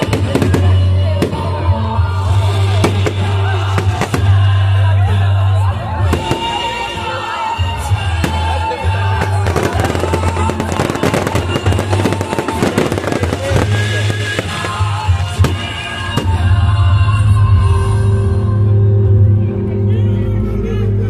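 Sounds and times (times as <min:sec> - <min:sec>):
fireworks crackling: 0:00.0 - 0:04.8, 0:06.0 - 0:16.7
loud music with heavy bass: 0:00.0 - 0:21.0.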